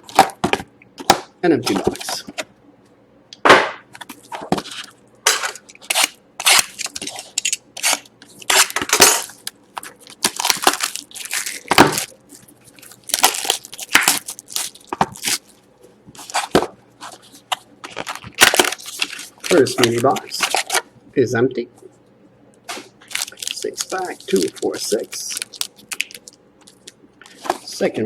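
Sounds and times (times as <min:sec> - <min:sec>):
crinkling pack wrappers: 0:04.1 - 0:20.9, 0:22.7 - 0:27.9.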